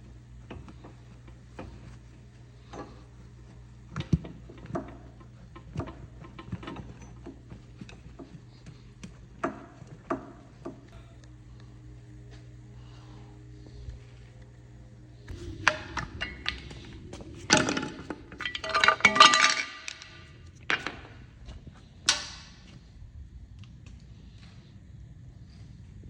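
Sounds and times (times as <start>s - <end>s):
steady low hum: 0.0s - 26.0s
hand tools clinking on metal: 17.5s - 21.0s.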